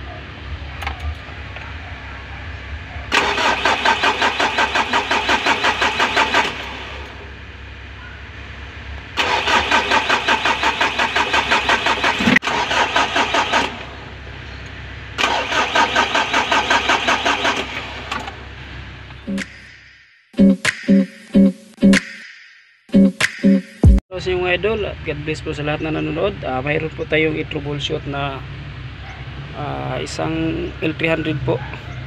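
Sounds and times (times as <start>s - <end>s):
diesel engine cranking: 3.1s - 7.4s, 9.0s - 19.3s.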